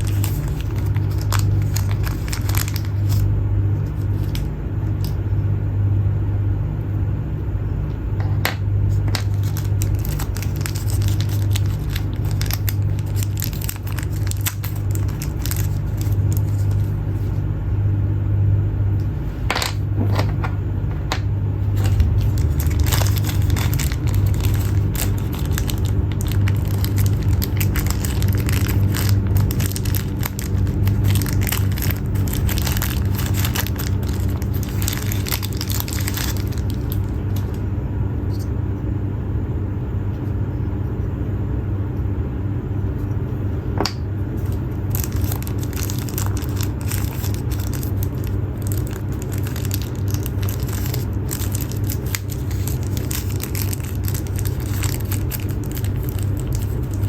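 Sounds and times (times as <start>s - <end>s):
packaging crinkling: 0.0s - 5.2s, 8.5s - 17.4s, 21.6s - 37.7s, 44.3s - 57.0s
low hum: 0.0s - 57.0s.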